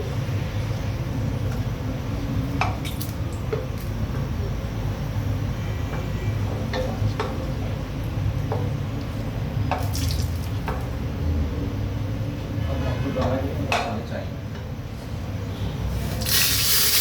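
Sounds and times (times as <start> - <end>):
water running from tap: 16.0 - 17.0.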